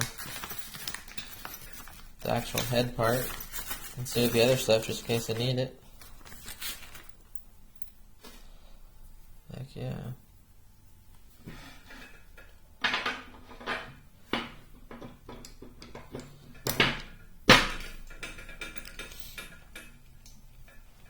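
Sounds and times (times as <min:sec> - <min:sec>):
metal tools clinking on work surface: 0:00.0 - 0:05.6, 0:17.7 - 0:20.0.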